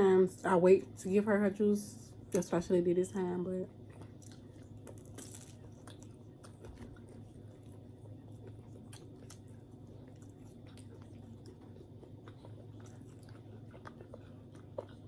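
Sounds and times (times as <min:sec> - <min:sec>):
low steady hum: 0:00.0 - 0:15.0
person chewing: 0:03.8 - 0:15.0.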